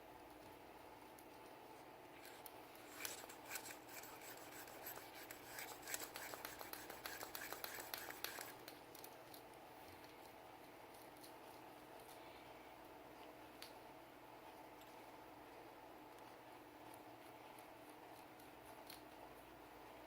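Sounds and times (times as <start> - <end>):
hands cleaning pistol: 2.8 - 8.6.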